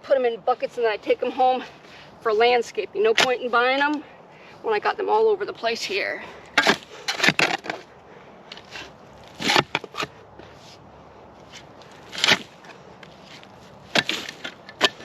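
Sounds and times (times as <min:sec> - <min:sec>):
shovel scraping and striking soil: 0:01.0 - 0:04.0, 0:05.6 - 0:07.9, 0:08.5 - 0:15.0.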